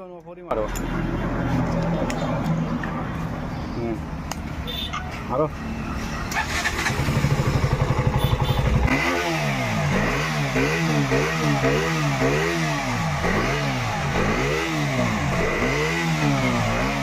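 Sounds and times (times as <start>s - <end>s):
motorcycle engine revving: 6.3s - 17.0s.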